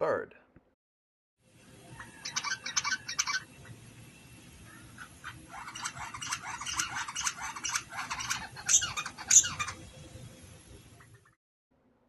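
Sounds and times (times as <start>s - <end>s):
birds chirping and squawking: 1.8s - 10.1s, 10.8s - 11.4s.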